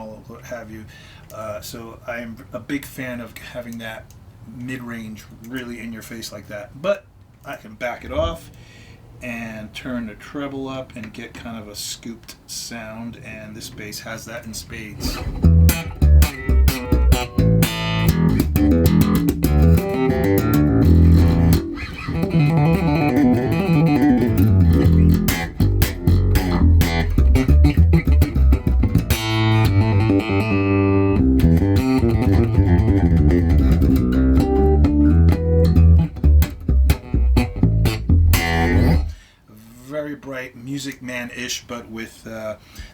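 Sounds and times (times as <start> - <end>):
bright plucked bass guitar: 15.1 - 39.2.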